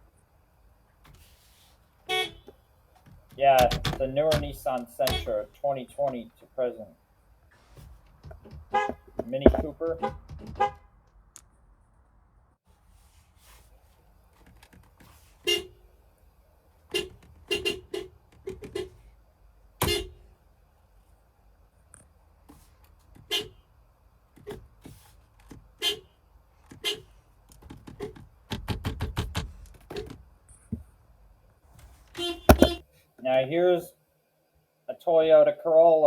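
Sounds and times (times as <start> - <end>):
car horns honking: 32.5 - 32.8.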